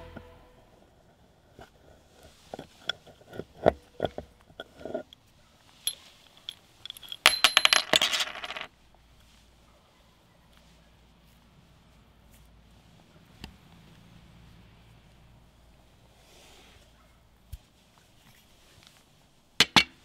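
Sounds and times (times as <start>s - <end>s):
small metal objects clinking: 5.8s - 8.7s.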